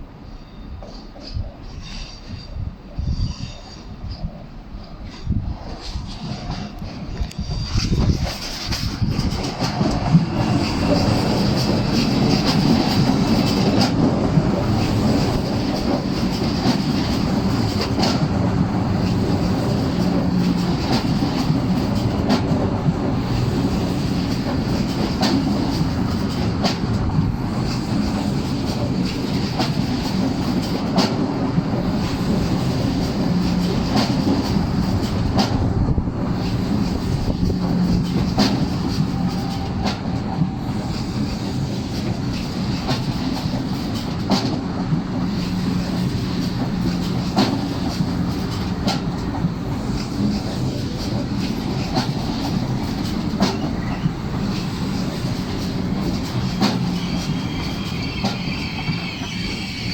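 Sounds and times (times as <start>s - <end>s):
train wheels clicking over joints: 0.8s - 59.9s
high wheel squeal: 56.3s - 59.9s.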